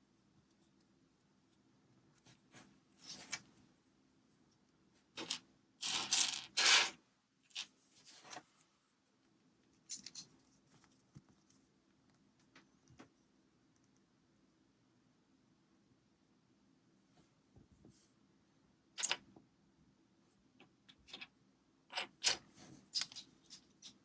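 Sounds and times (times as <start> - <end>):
plastic bricks clicking and rattling: 5.2 - 6.9.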